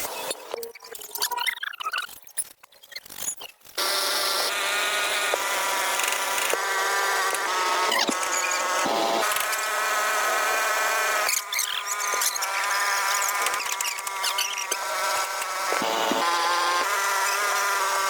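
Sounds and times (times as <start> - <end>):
power tool whining: 3.8 - 18.0.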